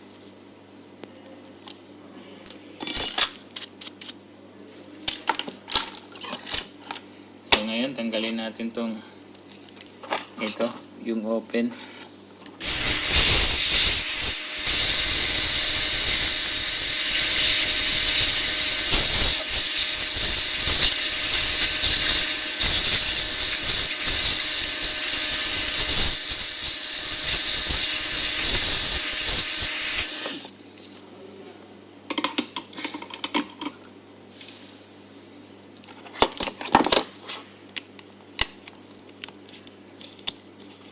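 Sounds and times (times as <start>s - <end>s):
hot air gun hissing: 12.6s - 30.5s.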